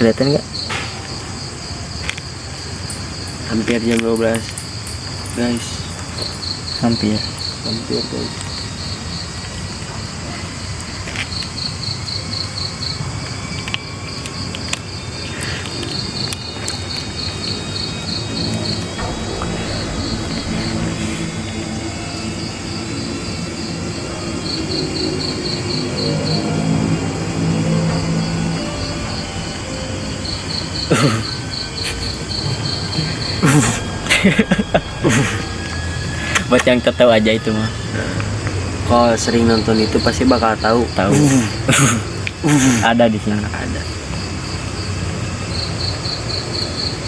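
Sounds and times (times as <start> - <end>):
cricket chirping: 0.0 - 47.0
low rumble: 18.2 - 39.0
low voices: 18.4 - 43.9.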